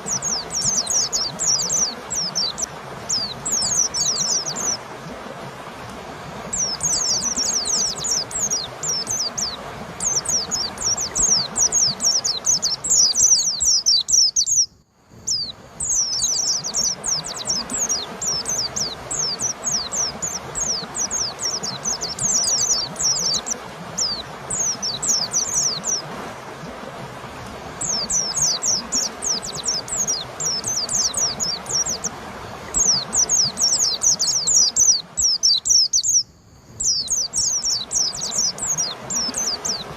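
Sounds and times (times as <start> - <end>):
bird singing high runs: 0.0 - 5.2, 6.3 - 26.8, 27.7 - 39.9.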